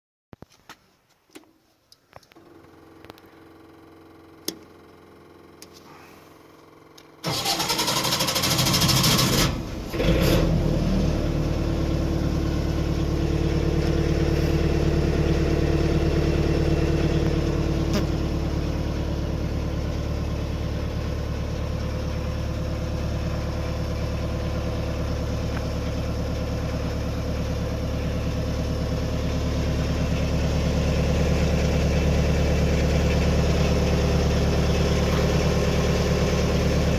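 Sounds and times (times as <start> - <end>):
faint hum and clicks: 0.4 - 3.4, 4.4 - 5.0, 5.6 - 7.2
diesel generator running: 2.4 - 36.9
starter motor cranking: 7.2 - 9.6.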